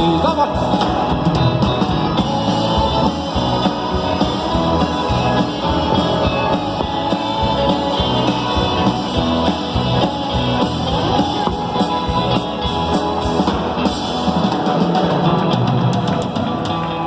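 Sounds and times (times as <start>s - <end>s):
drum kit beat: 0.0s - 16.9s
electric guitar: 0.0s - 17.0s.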